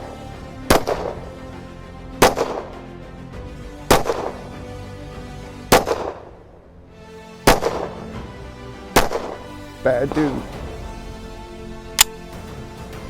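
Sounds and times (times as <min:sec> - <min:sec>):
background music: 0:00.0 - 0:13.0.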